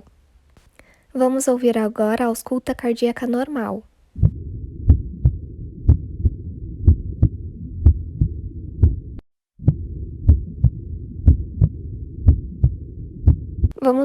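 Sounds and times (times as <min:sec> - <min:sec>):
low steady hum: 0:03.8 - 0:14.0
heartbeat through stethoscope: 0:04.2 - 0:13.8.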